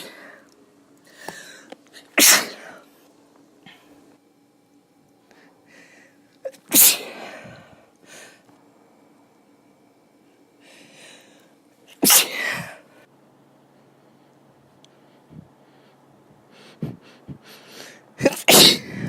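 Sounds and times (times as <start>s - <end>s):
woman sneezing: 2.0s - 2.8s, 6.5s - 7.6s, 12.0s - 12.8s, 18.2s - 19.0s
drawn-in breath: 14.9s - 18.1s.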